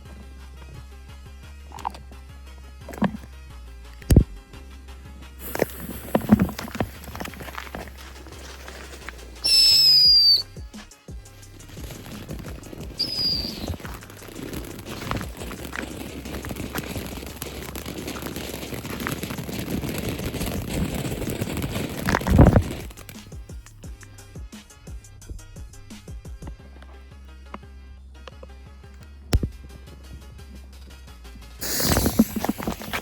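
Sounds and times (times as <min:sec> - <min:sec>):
firework crackling: 0:05.4 - 0:23.9, 0:31.6 - 0:33.0.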